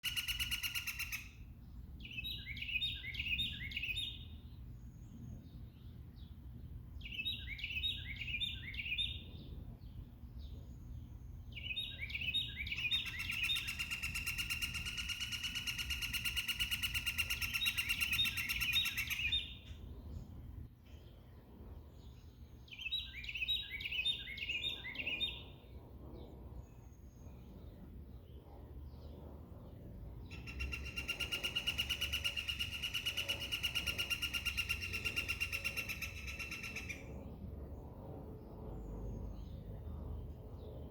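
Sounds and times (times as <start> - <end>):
songbirds whistling: 0.0 - 1.4, 2.0 - 6.4, 7.0 - 19.7, 22.0 - 25.6, 30.2 - 37.2
low background rumble: 34.9 - 40.9.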